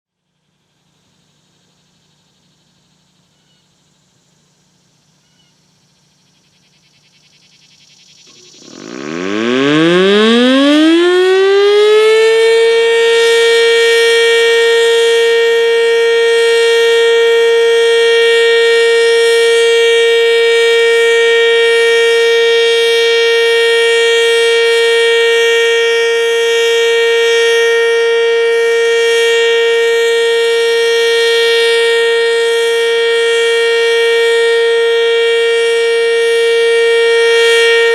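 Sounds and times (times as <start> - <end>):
outdoor warning siren winding up: 8.2 - 37.9.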